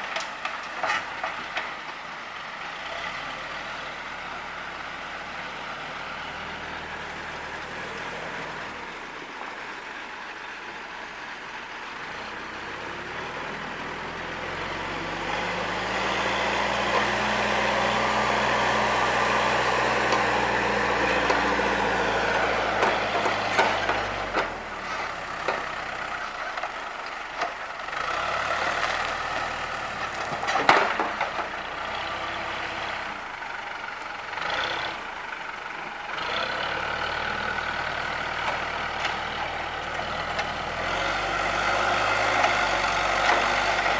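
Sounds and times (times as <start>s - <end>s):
wood and brush cracking: 0.0s - 3.0s, 13.4s - 43.9s
heavy diesel engine working: 0.0s - 43.9s.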